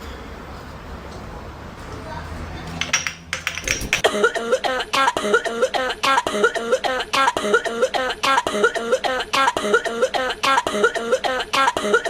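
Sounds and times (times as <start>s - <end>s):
rapid coughing: 4.0s - 12.0s.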